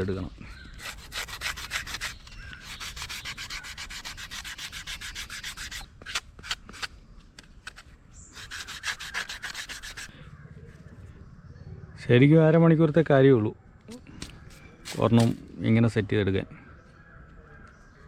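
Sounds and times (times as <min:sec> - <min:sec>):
sandpaper rubbing rubber: 0:00.8 - 0:06.9, 0:07.7 - 0:10.1.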